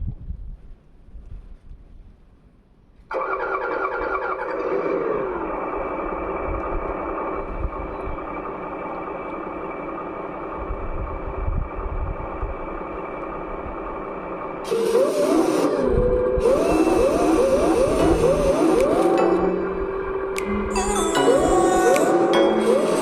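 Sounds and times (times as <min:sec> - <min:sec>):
simulated diesel engine revving: 0:14.6 - 0:19.2.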